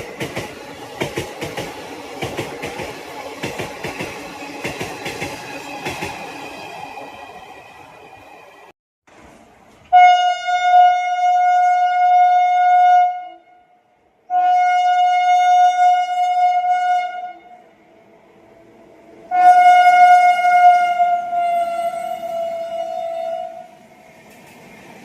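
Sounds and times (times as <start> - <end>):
locomotive horn blasts: 9.9 - 17.6, 19.3 - 23.7
faint rumble of running train: 14.8 - 25.0.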